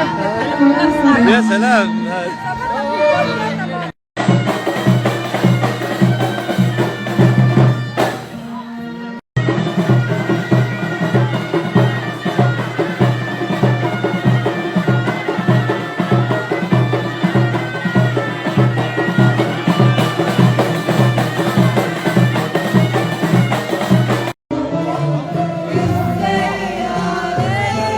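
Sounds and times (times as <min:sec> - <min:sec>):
reedy wind instrument melody: 0:00.0 - 0:03.9, 0:04.5 - 0:27.0
steady drumbeat: 0:00.6 - 0:02.3, 0:04.2 - 0:08.6, 0:09.4 - 0:24.4.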